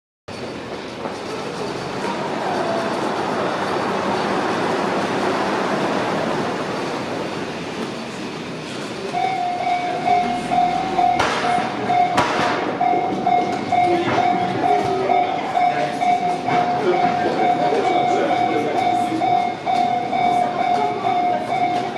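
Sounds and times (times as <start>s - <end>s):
train running past: 0.3s - 21.9s
level crossing warning bell: 9.1s - 21.9s
sharp knocks: 11.1s - 12.8s.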